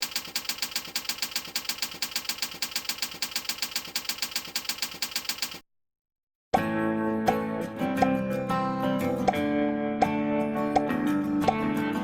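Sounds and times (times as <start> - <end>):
rapid mechanical clicking: 0.0 - 5.6.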